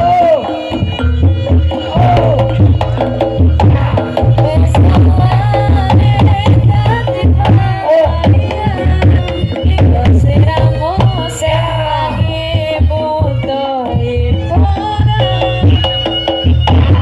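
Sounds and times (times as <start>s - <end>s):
reedy wind instrument melody: 0.0s - 13.8s
drums in busy rhythm: 0.0s - 17.0s
deep gongs: 1.0s - 5.5s.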